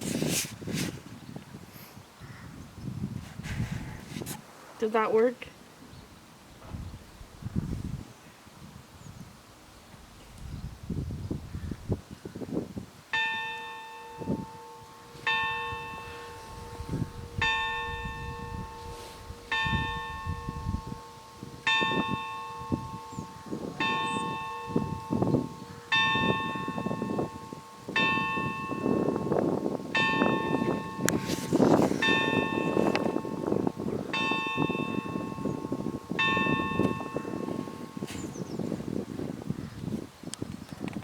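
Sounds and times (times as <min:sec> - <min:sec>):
church bell ringing: 0:13.1 - 0:38.4.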